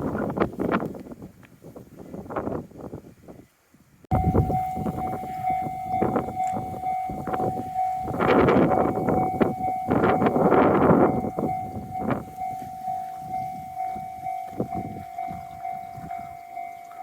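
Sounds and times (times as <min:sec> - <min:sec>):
level crossing warning bell: 0:04.1 - 0:17.0.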